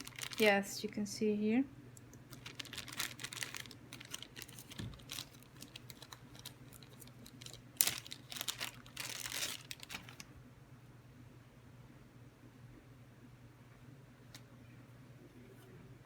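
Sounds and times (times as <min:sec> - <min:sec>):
packaging crinkling and rustling: 0:00.0 - 0:00.6, 0:02.2 - 0:10.4.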